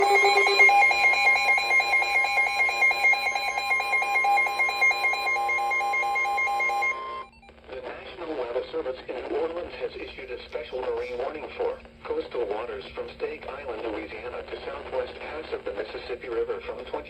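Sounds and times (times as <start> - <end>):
steady alert tone: 0.0 - 7.2
rapid beeping alarm: 0.0 - 7.4.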